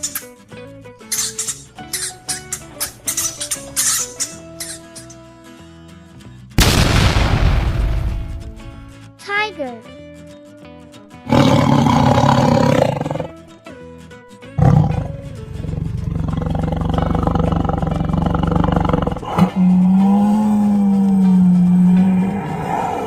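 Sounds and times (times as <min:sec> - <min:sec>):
tiger roaring: 0:11.3 - 0:13.4, 0:14.6 - 0:23.0.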